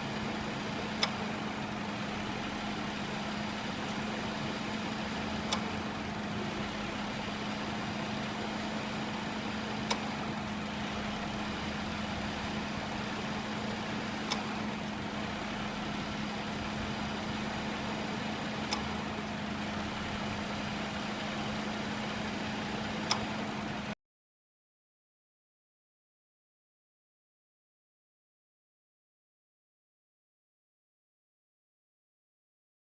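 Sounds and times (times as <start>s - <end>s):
compressor clutch click: 0.0s - 23.9s
car engine idling: 0.0s - 24.0s.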